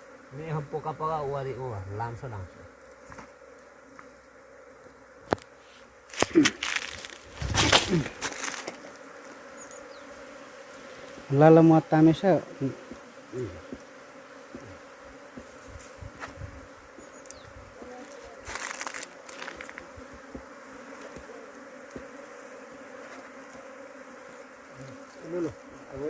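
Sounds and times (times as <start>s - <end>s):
honeybees buzzing: 0.0s - 26.0s
rustle of handling: 5.6s - 9.1s, 17.8s - 19.9s.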